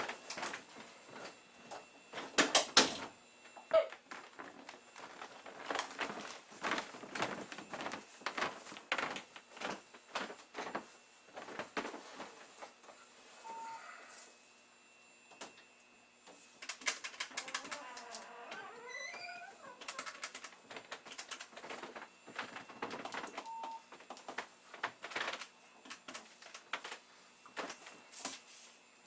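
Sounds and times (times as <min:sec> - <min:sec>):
keyboard typing: 0:16.6 - 0:18.2, 0:19.8 - 0:21.8
faint sliding squeaks: 0:17.7 - 0:20.0.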